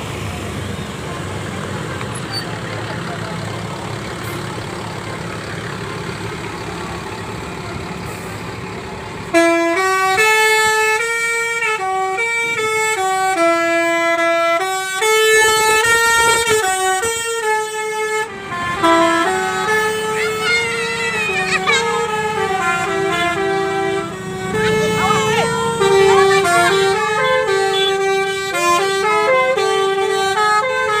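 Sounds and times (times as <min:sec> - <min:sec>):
engine rumble: 0:00.0 - 0:31.0
traffic: 0:00.0 - 0:31.0
multi-tone bus horn tune: 0:09.2 - 0:31.0.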